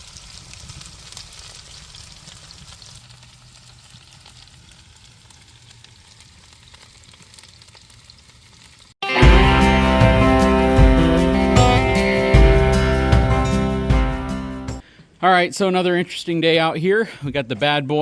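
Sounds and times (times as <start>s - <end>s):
dumplings sizzling in hot oil: 0.0s - 9.0s.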